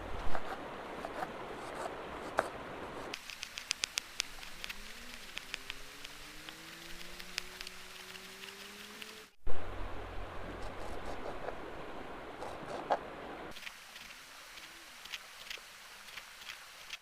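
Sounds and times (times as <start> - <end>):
heavy rain hissing: 0.0 - 17.0
sharp clicks: 3.1 - 9.4
faint rising tones: 4.0 - 13.6.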